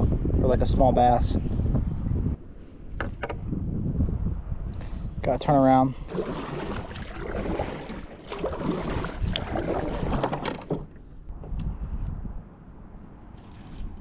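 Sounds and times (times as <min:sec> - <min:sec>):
paddle splashing in water: 0:06.1 - 0:11.2.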